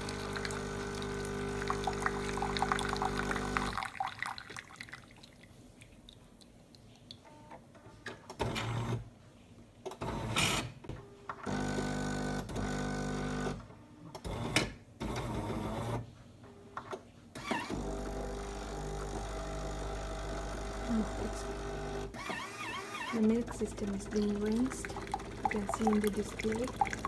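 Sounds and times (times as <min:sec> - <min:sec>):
coffee machine pump buzzing: 0:00.0 - 0:03.8, 0:17.7 - 0:27.0.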